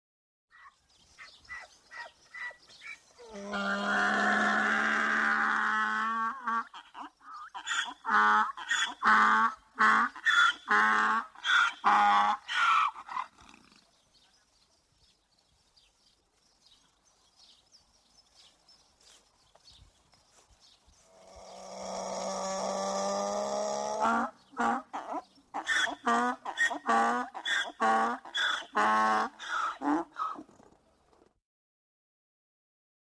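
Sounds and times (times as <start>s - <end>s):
donkey braying: 0.6s - 13.7s, 21.1s - 30.7s.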